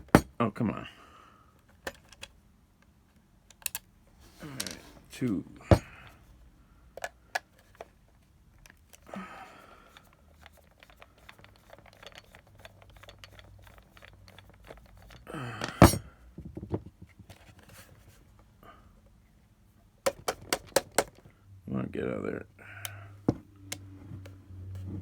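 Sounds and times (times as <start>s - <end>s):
screwdriver clicks and scrapes: 9.9s - 16.0s
knock on plastic case: 15.8s - 17.1s.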